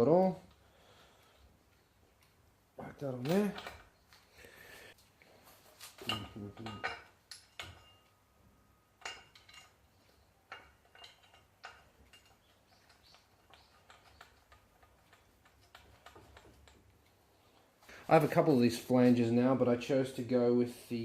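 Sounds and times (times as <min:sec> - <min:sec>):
metal parts clinking: 0:05.9 - 0:08.2, 0:09.0 - 0:16.9.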